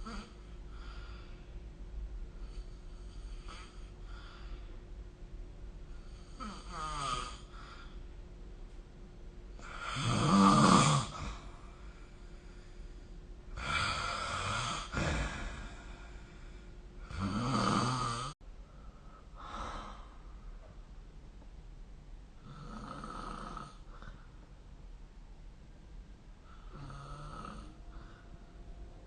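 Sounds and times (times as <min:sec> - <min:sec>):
person snoring: 0:00.0 - 0:00.9, 0:02.5 - 0:04.3, 0:06.1 - 0:07.7, 0:09.6 - 0:11.7, 0:13.6 - 0:18.4, 0:22.4 - 0:24.1, 0:26.6 - 0:28.2.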